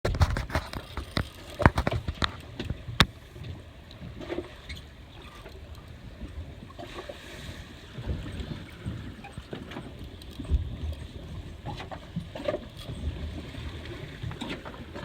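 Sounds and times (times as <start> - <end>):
sharp knocks and clicks: 0.0 - 3.2
water around boat: 0.0 - 15.0
wind: 0.0 - 15.0.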